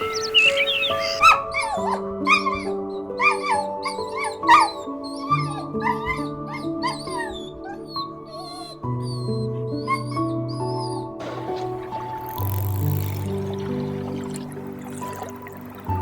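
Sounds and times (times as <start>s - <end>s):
high pitch-bending animal calls: 0.0s - 1.7s
soft piano music: 0.0s - 16.0s.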